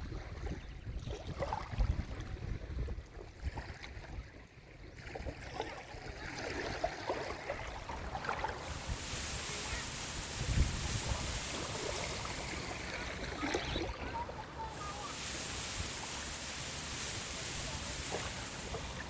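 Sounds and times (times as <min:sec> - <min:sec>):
small splashes and lapping: 0:05.0 - 0:13.8, 0:14.8 - 0:19.0
sea waves washing onto shore: 0:07.2 - 0:19.0.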